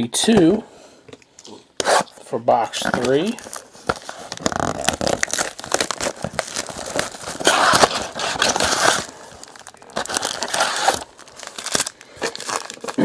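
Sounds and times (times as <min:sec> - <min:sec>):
plastic wrapping tearing and crinkling: 0:02.8 - 0:13.0.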